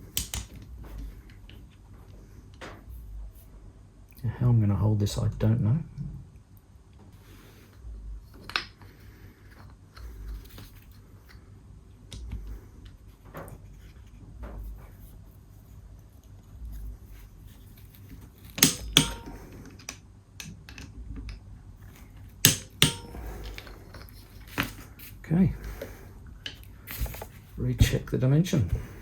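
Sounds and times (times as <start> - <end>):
hand tools tapping metal parts: 0.0 - 1.0, 18.5 - 20.9, 22.4 - 24.8
sharp metallic clicks: 18.6 - 19.4.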